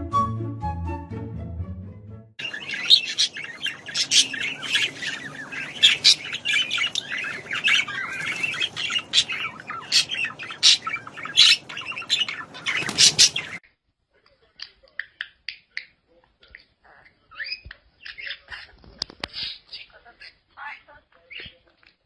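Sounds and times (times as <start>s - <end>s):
parrot chattering and chirping: 2.4s - 13.6s, 16.4s - 21.7s
parrot squawks: 2.4s - 13.6s.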